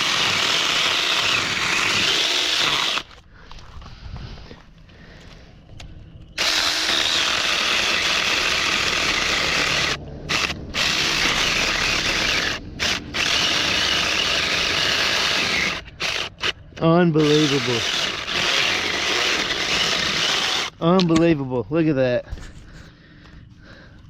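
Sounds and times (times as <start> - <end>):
electric chainsaw cutting wood: 0.0 - 3.2, 6.4 - 20.8.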